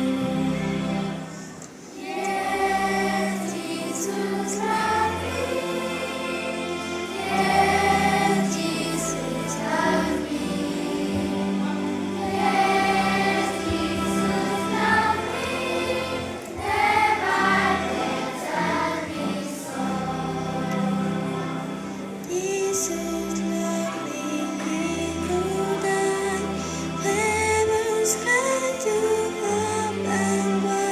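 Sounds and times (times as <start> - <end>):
choir singing long notes: 0.0 - 30.9.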